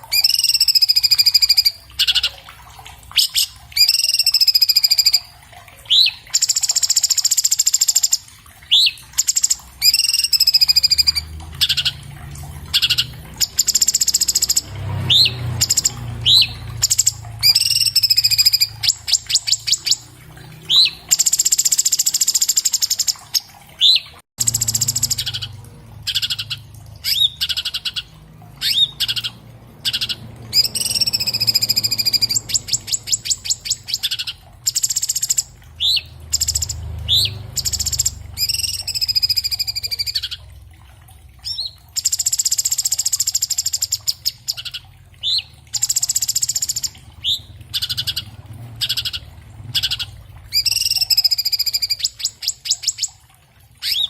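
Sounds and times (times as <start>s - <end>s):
bird singing fast varied song: 0.0s - 2.4s, 3.2s - 5.3s, 5.9s - 12.0s, 12.7s - 20.1s, 20.7s - 25.5s, 26.1s - 40.4s, 41.4s - 53.1s.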